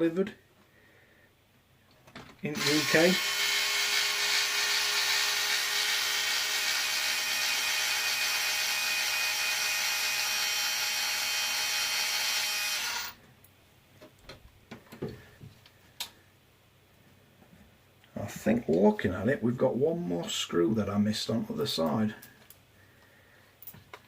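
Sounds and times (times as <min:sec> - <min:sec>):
cordless drill whining: 0:02.6 - 0:13.2.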